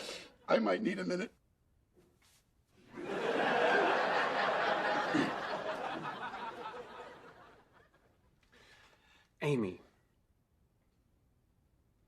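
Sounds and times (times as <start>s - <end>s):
studio audience laughing: 2.9s - 8.2s.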